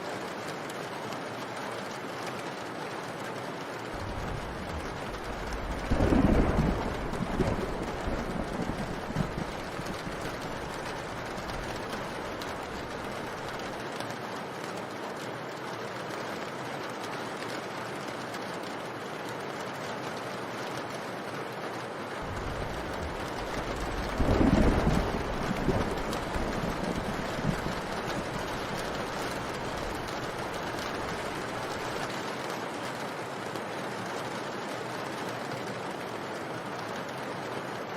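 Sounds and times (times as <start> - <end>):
steady rain: 0.0 - 37.9
thunder rumbling: 4.0 - 13.8, 22.2 - 32.2.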